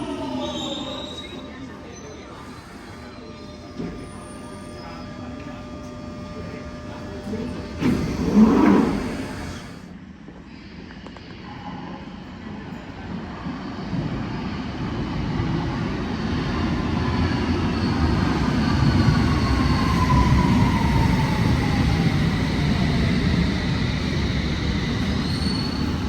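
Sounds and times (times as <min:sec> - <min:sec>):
train motor whine: 0:01.5 - 0:09.9, 0:17.0 - 0:26.0
train rumble: 0:11.0 - 0:26.0.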